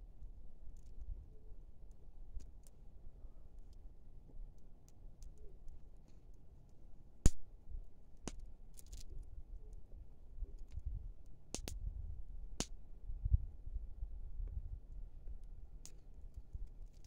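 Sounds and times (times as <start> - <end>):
sharp clicks and cracks: 8.2 - 9.2, 11.5 - 11.8, 15.8 - 17.0.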